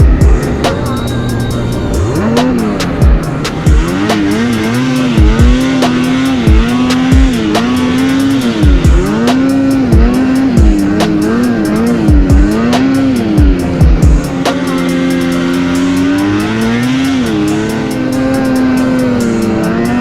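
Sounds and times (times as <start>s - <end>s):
electronic beat music: 0.0s - 20.0s.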